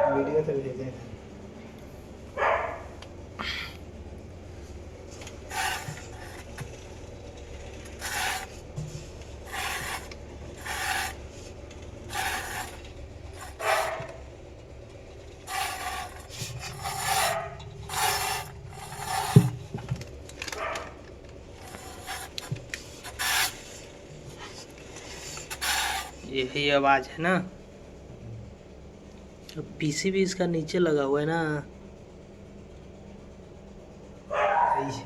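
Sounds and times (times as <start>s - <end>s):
washing machine drum rubbing: 5.4s - 14.2s, 15.4s - 20.0s, 21.6s - 23.8s, 25.2s - 26.2s.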